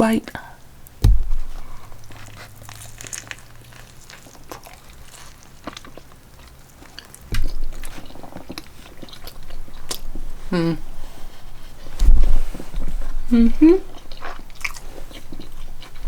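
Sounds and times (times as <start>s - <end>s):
chewing sandwich: 0.9s - 16.0s
low thump: 1.0s - 1.8s, 7.4s - 7.8s
person humming mm: 10.5s - 10.9s, 13.3s - 13.9s.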